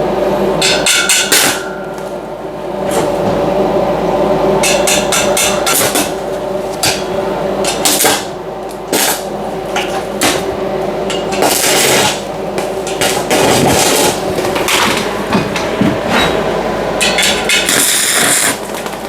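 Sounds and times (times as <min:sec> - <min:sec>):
steady hum: 0:00.0 - 0:19.0
arc welding crackling: 0:10.2 - 0:15.1, 0:17.6 - 0:19.0.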